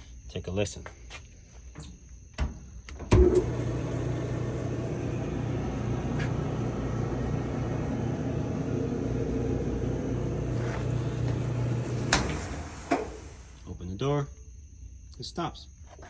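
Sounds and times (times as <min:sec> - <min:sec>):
clothes dryer humming: 0:03.0 - 0:13.7.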